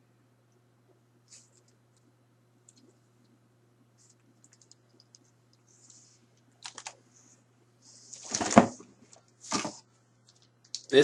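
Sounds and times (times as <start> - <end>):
plastic figures clicking and rustling: 6.6 - 7.0, 8.2 - 11.0.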